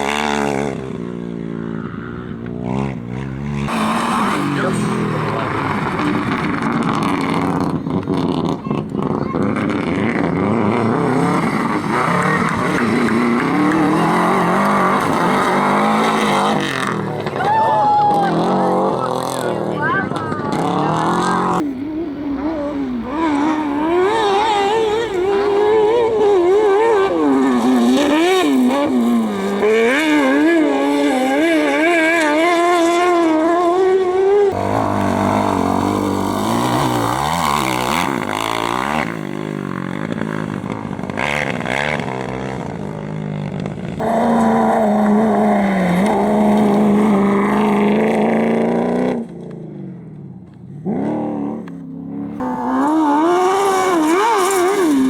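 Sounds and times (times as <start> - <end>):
racing engines revving: 0.0 - 55.0.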